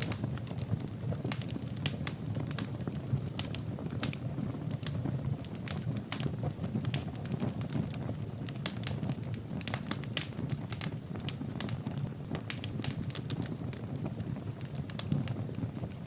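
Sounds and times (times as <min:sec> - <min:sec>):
fire crackling and popping: 0:00.0 - 0:16.0
fire flames rushing: 0:00.0 - 0:16.0.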